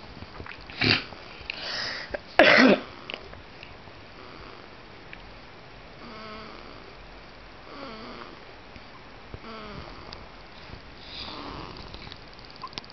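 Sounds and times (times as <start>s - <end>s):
baby snoring squeakily: 6.0s - 6.8s, 7.7s - 8.4s, 9.4s - 10.1s, 11.0s - 12.1s.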